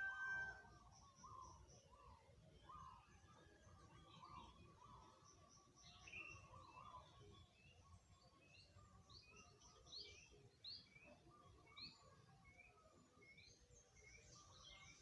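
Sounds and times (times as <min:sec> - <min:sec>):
birds chirping: 0:00.0 - 0:00.6.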